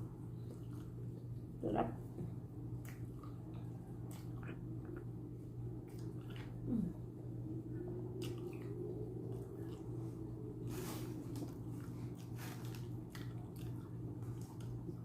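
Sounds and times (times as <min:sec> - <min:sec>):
steady low hum: 0:00.0 - 0:15.0
person chewing food: 0:02.8 - 0:06.7, 0:08.0 - 0:15.0.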